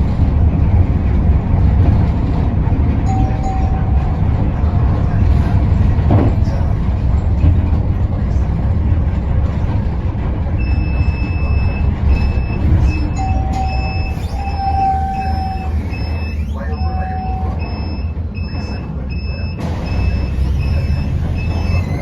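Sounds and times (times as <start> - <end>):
bus engine and road rumble: 0.0 - 22.0
steady whine: 10.5 - 17.7
electronic beeps: 10.6 - 22.0.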